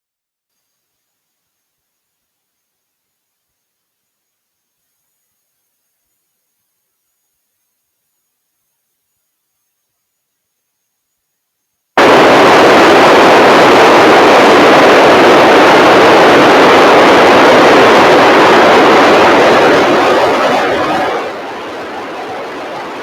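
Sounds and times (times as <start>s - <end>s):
radio receiver static hiss: 12.0s - 23.0s.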